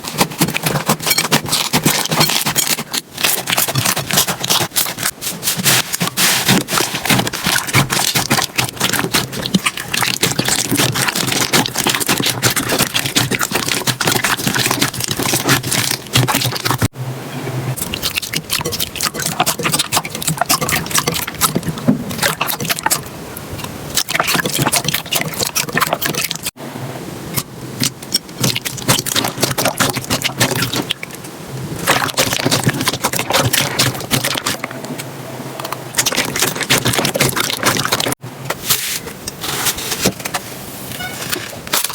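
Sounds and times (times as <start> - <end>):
slime crackling and popping: 0.0 - 16.9.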